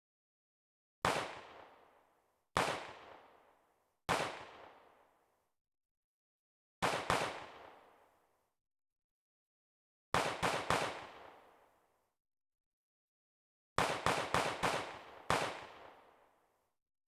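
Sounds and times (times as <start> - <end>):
gunshots with long echo: 1.0 - 2.0, 2.6 - 3.5, 4.1 - 5.2.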